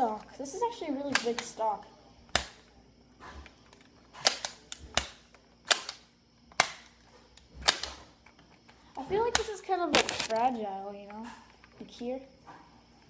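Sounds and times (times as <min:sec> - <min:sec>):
hard plastic clicks and snaps: 0:01.1 - 0:01.6, 0:02.3 - 0:02.8, 0:03.6 - 0:10.5.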